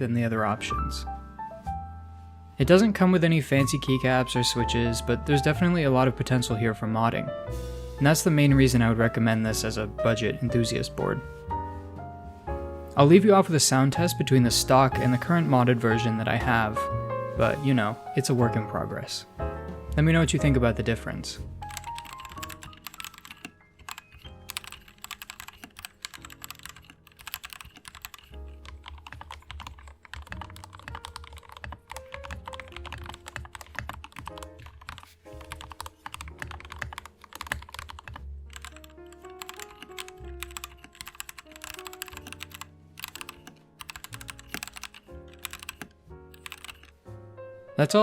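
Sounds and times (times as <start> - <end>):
background music: 0.0 - 48.0
mechanical keyboard typing clicks: 21.7 - 47.0.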